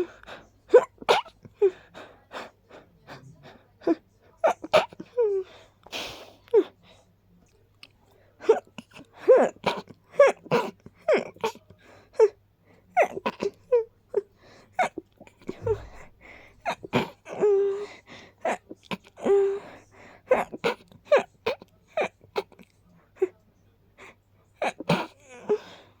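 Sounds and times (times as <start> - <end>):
catches of breath: 15.4 - 17.1.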